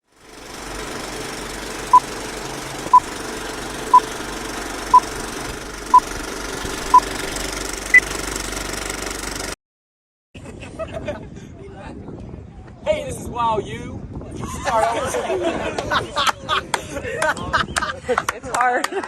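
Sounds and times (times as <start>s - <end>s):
film projector clatter: 0.1s - 9.6s.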